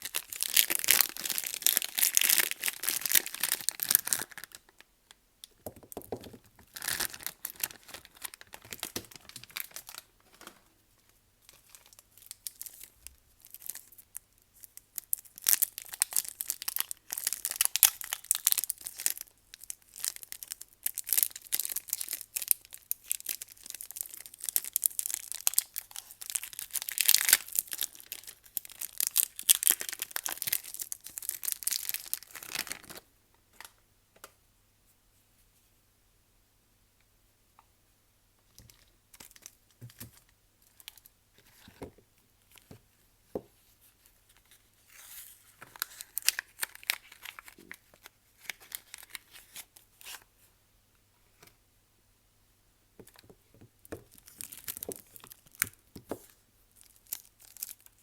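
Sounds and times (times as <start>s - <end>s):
packaging torn and crinkled: 0.0s - 4.7s, 6.6s - 10.6s, 11.5s - 33.1s, 44.4s - 50.2s, 54.0s - 55.8s, 56.8s - 58.0s.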